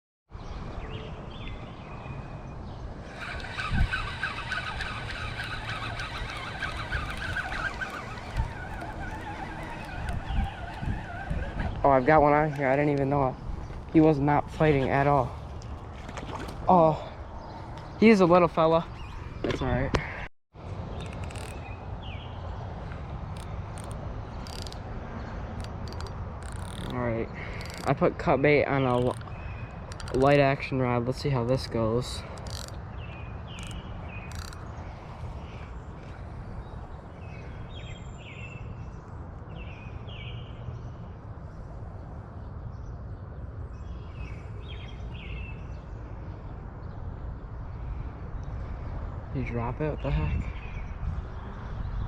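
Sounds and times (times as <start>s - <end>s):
birds calling: 2.6s - 20.3s, 20.9s - 41.0s
wind on microphone: 3.0s - 16.7s, 50.0s - 52.0s.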